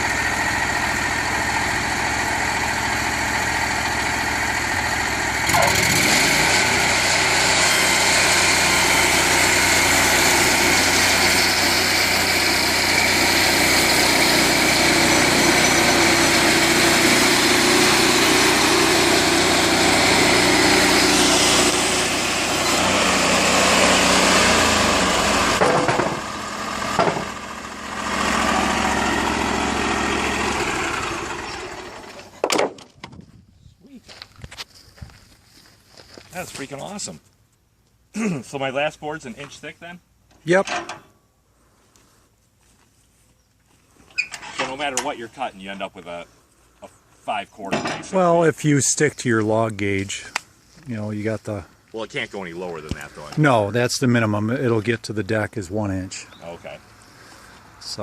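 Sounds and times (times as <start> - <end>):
bandsaw sawmill engine running: 0.0 - 32.7
band saw cutting log: 4.6 - 32.4.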